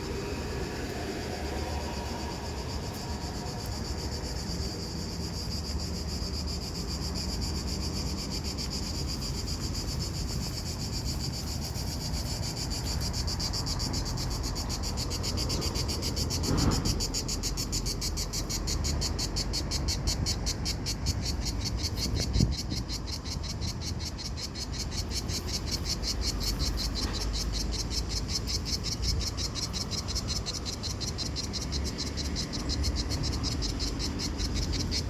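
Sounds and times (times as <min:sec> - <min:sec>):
cicadas buzzing: 0:00.0 - 0:35.0.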